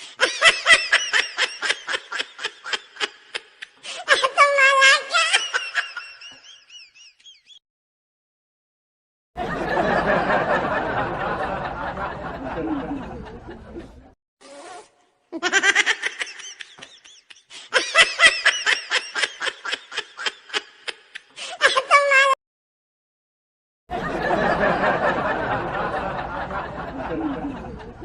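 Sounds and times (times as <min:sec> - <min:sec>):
rapid pulsing laughter: 0:24.0 - 0:28.0.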